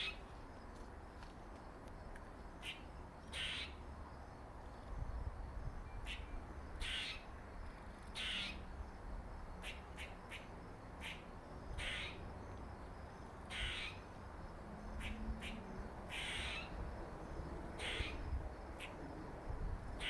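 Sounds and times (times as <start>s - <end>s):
squirrel harsh calls: 3.4s - 3.7s, 6.8s - 7.2s, 8.2s - 8.6s, 9.6s - 11.2s, 11.8s - 12.2s, 13.5s - 14.0s, 15.0s - 16.8s, 17.8s - 18.2s.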